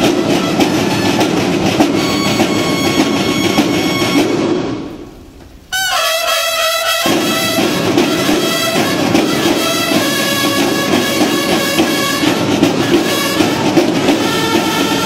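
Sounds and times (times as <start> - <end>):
brass band playing: 0.0 - 5.0, 5.7 - 15.0
held brass chord: 5.7 - 15.0.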